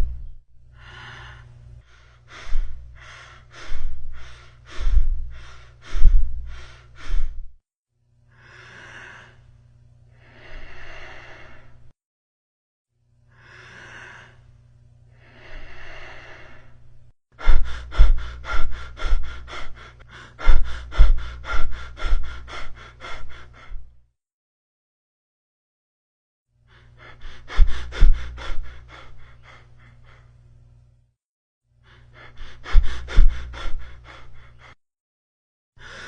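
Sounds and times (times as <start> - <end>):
low hum: 0.0 - 7.6
lung breathing sounds: 0.0 - 7.6, 8.3 - 11.9, 13.3 - 14.5, 15.1 - 24.0, 26.7 - 30.4, 31.8 - 34.8.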